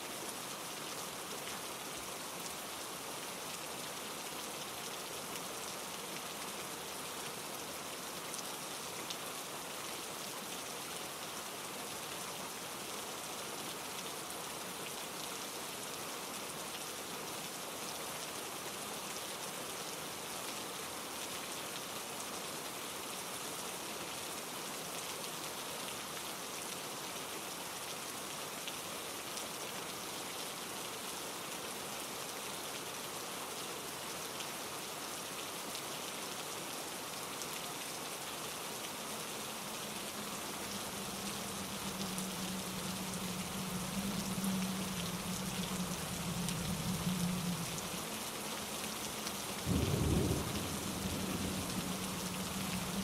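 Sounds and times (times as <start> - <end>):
rain falling through trees: 0.0 - 53.0
stream tumbling over rocks: 37.4 - 53.0.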